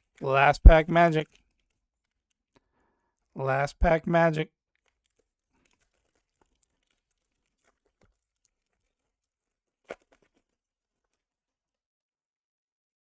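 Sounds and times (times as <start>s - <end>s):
foil wrapper crinkling and tearing: 1.2s - 2.5s, 4.6s - 11.7s.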